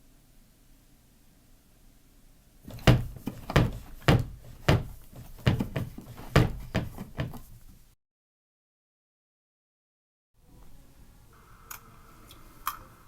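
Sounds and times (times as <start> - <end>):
foley thumps and knocks: 2.6 - 7.8.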